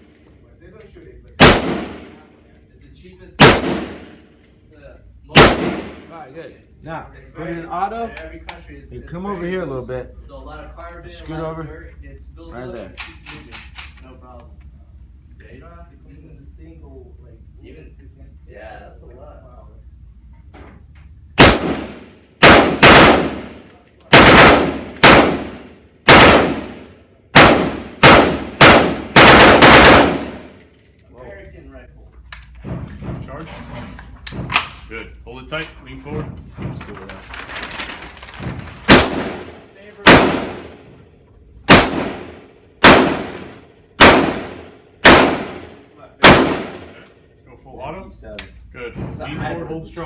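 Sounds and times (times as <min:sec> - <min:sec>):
rifle shots ringing out: 0:01.4 - 0:02.3, 0:03.4 - 0:04.2, 0:05.4 - 0:06.2, 0:21.4 - 0:30.6, 0:38.8 - 0:40.9, 0:41.7 - 0:47.0.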